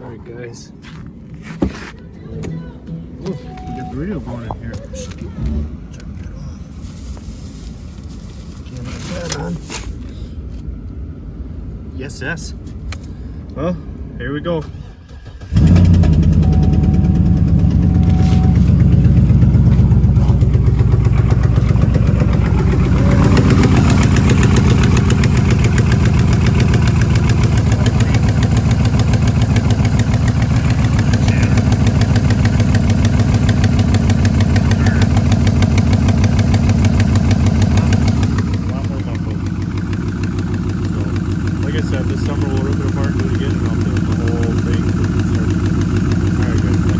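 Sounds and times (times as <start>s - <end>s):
car engine idling: 0.0s - 46.9s.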